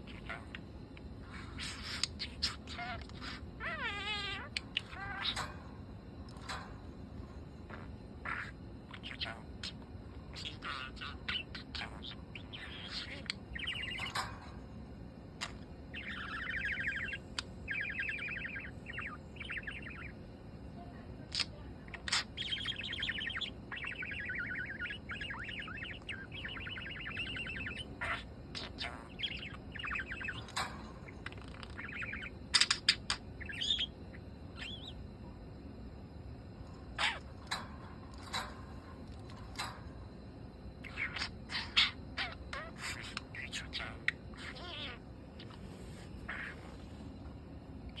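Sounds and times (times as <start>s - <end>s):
parakeet chattering and warbling: 0.0s - 14.8s, 15.4s - 35.2s, 36.5s - 47.3s.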